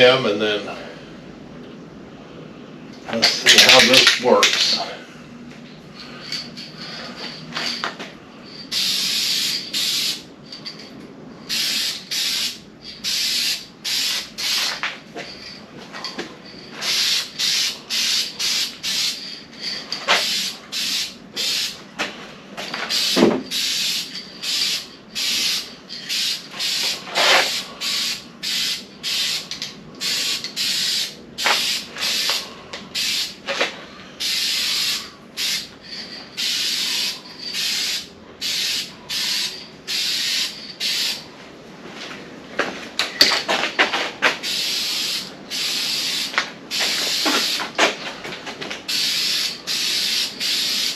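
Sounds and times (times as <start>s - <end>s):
aerosol spray can hissing bursts: 8.7s - 10.2s, 11.5s - 14.8s, 16.8s - 19.2s, 20.1s - 21.8s, 22.9s - 32.4s, 33.0s - 33.4s, 34.2s - 35.7s, 36.4s - 41.2s, 44.4s - 47.8s, 48.9s - 50.9s.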